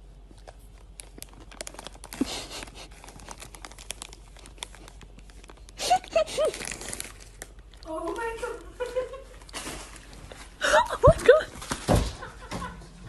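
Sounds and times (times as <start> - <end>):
packaging crinkling and rustling: 0.3 - 10.6.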